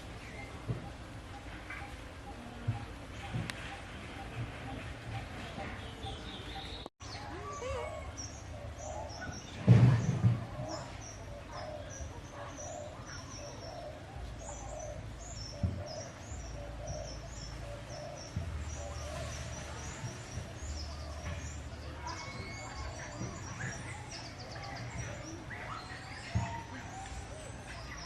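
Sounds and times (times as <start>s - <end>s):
small birds chirping: 0.0s - 28.0s
loud low thump: 9.6s - 10.8s.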